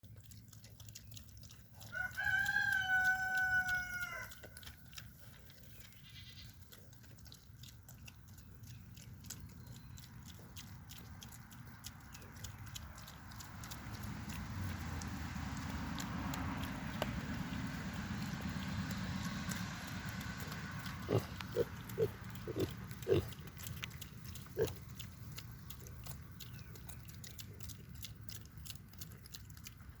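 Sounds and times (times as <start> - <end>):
animal chewing clicks: 0.0 - 30.0
high-pitched animal call: 2.0 - 4.4
pig grunting: 20.4 - 29.5.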